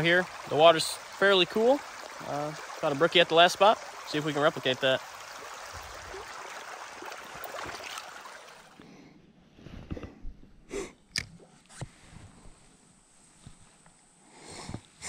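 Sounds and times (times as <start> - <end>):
creek water running: 0.0 - 8.8.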